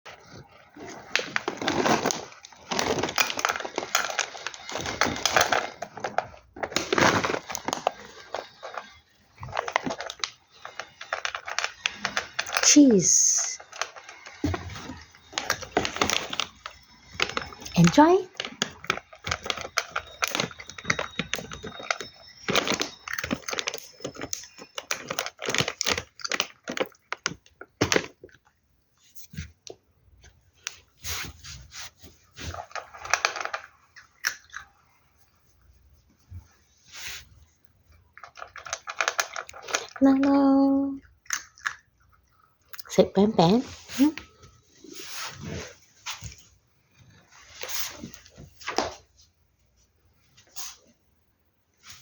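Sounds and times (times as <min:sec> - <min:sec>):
crunchy food being chewed: 0:00.1 - 0:12.6, 0:13.6 - 0:28.6, 0:31.8 - 0:35.4, 0:38.0 - 0:40.3, 0:41.0 - 0:42.9
pet chewing crunchy food: 0:00.1 - 0:12.7, 0:38.1 - 0:44.1.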